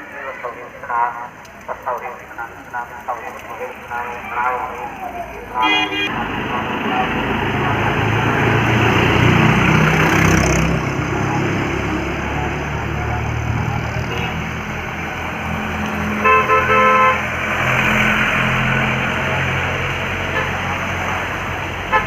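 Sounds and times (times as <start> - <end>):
vehicle rumbling: 0.0 - 22.0
vehicle horn honking: 5.6 - 6.1, 14.1 - 14.5, 16.2 - 17.2.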